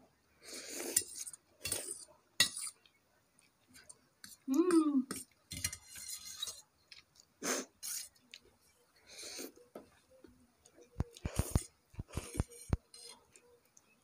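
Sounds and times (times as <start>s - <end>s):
breathy sniffs and mouth sounds: 7.4s - 8.2s, 9.0s - 9.6s, 11.0s - 13.2s.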